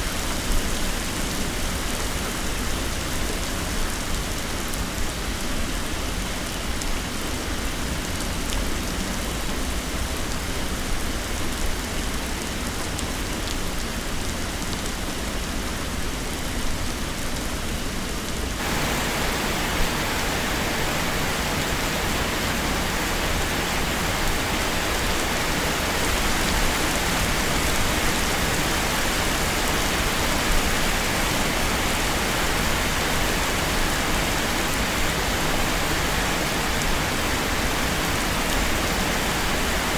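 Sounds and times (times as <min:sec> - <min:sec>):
heavy rain pouring: 0:18.6 - 0:39.9.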